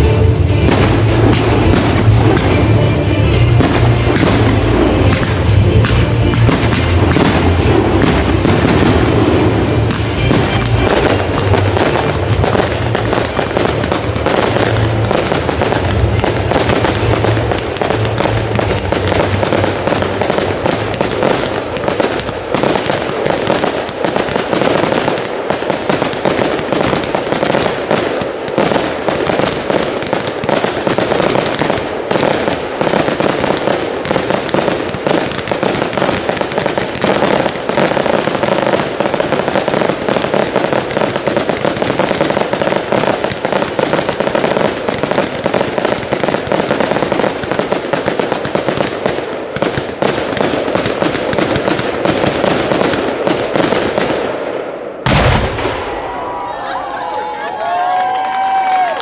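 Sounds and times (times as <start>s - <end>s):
music playing: 0.0s - 22.4s
fireworks exploding and crackling: 0.0s - 59.0s.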